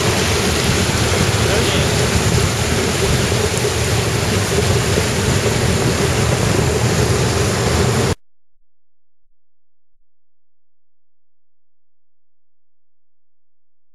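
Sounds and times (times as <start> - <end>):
train rushing through floodwater: 0.0 - 8.2
wind noise on microphone: 0.0 - 8.2.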